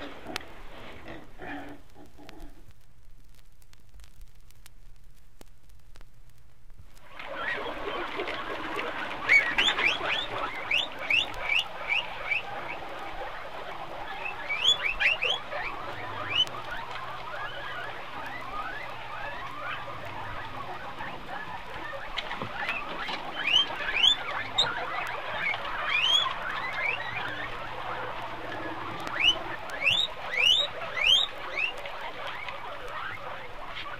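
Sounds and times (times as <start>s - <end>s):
guinea pigs squealing: 0.0s - 2.6s, 7.0s - 33.9s.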